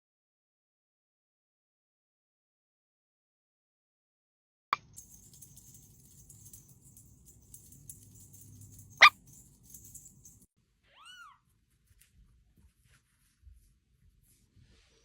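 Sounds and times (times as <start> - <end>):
small animal yelp: 10.9 - 11.4.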